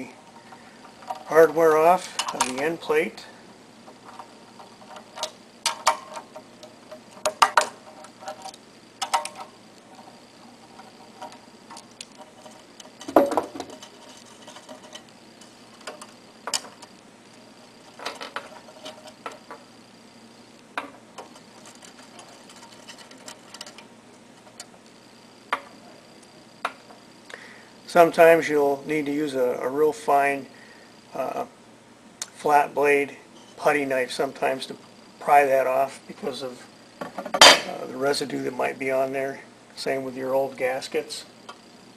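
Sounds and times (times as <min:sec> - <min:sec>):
metal tools and bolts clinking: 0:00.9 - 0:02.9, 0:37.3 - 0:37.8.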